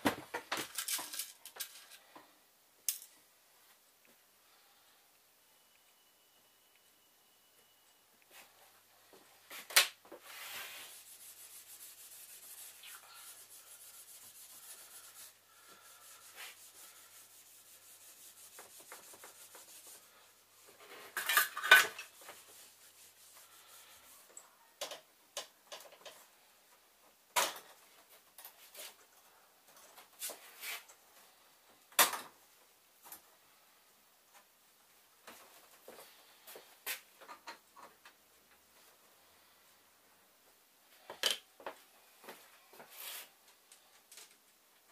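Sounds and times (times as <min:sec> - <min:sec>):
faint steady hiss: 0:00.0 - 0:44.9
parts and tools clinking: 0:00.4 - 0:02.0.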